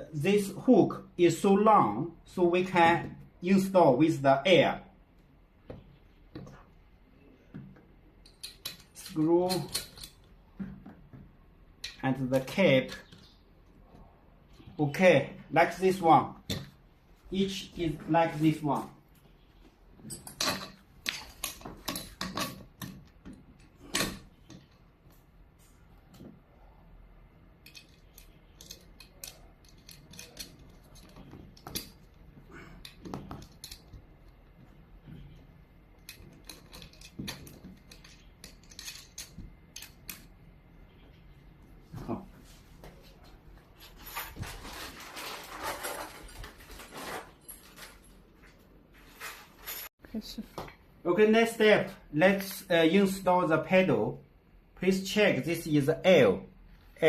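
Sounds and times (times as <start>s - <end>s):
rustling and scraping of parts: 15.7s - 26.6s, 27.4s - 49.9s
small hardware clicking and knocking: 36.0s - 40.4s.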